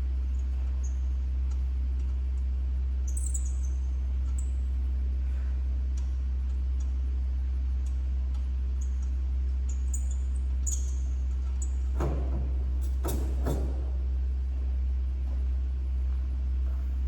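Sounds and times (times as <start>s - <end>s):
low hum: 0.0s - 17.0s
high bird chirps: 3.1s - 3.8s.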